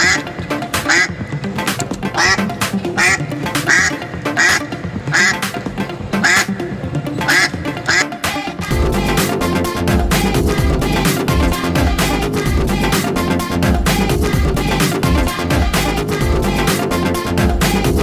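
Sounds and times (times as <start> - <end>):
duck quacking: 0.0 - 1.2, 2.1 - 5.6, 6.2 - 6.6, 7.2 - 8.2
music with a beat: 0.0 - 18.0.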